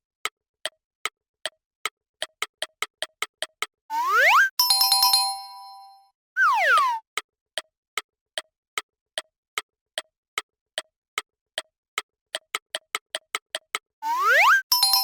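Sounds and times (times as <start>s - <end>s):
rising whistle-like glide: 3.9s - 4.6s, 14.0s - 14.7s.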